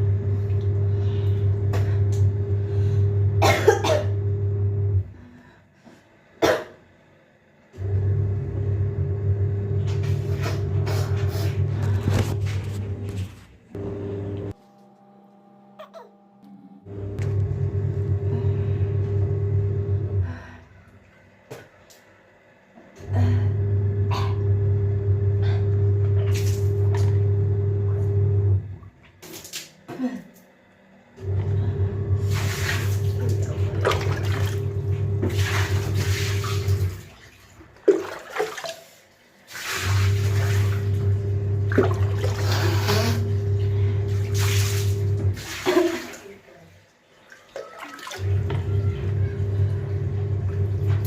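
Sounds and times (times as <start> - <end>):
low machine hum: 0.0 - 5.8, 7.2 - 21.5, 22.1 - 29.0, 30.0 - 37.5, 39.9 - 45.5, 48.2 - 51.0
person coughing: 3.4 - 4.2, 6.4 - 6.8, 15.8 - 16.2, 24.1 - 24.4, 29.9 - 30.4.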